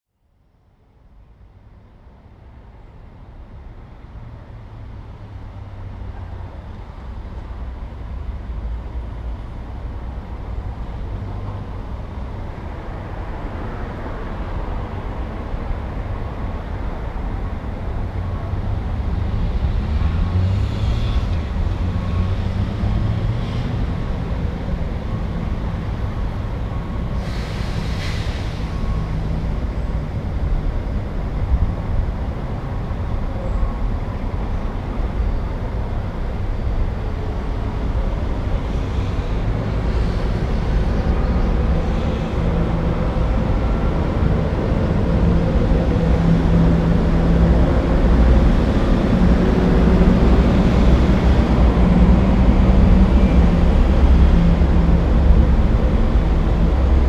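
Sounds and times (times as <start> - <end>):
passing cars rumbling: 4.5 - 57.0
vehicle engine droning: 14.2 - 57.0.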